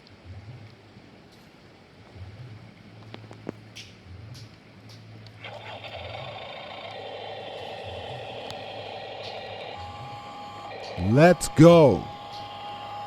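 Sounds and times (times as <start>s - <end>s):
electric motor whining: 5.4s - 13.0s.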